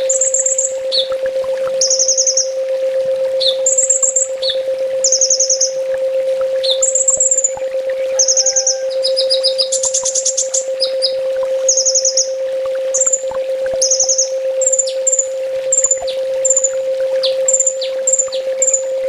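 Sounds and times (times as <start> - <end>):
bird trills and chirps: 0.0 - 1.1, 1.8 - 2.5, 3.4 - 5.8, 6.6 - 12.3, 13.0 - 13.2, 13.8 - 18.8
steady low hum: 0.0 - 19.0.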